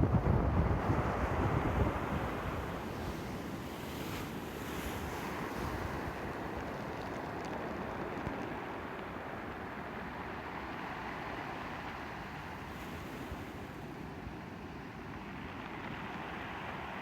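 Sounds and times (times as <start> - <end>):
wind buffeting microphone: 0.0 - 10.5.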